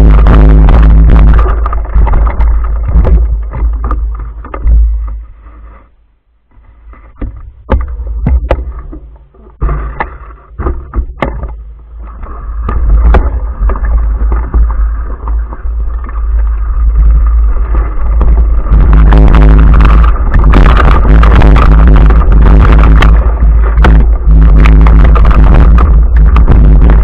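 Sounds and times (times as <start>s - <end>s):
wind buffeting on microphone: 0.0s - 3.8s, 18.1s - 27.0s.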